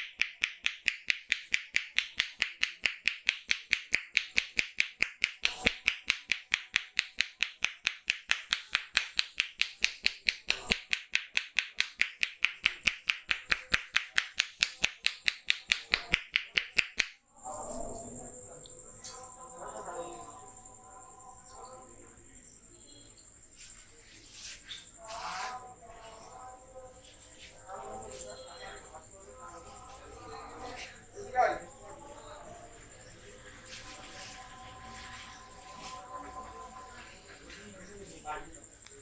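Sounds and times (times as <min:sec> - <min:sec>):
hand strikes clapping: 0:00.0 - 0:17.2.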